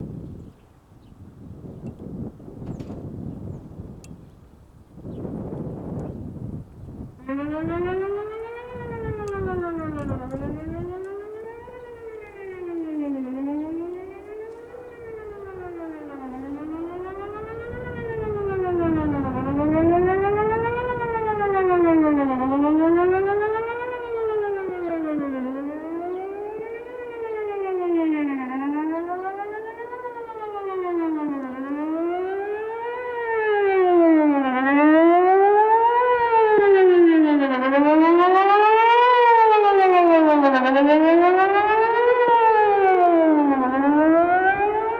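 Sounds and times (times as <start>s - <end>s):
outdoor warning siren wail: 0.0s - 44.9s.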